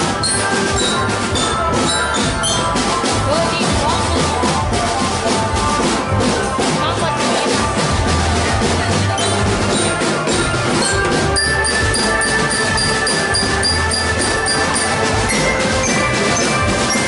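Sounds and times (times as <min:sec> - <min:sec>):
marching drum band playing: 0:00.0 - 0:17.0
high ticking figure: 0:10.8 - 0:17.0.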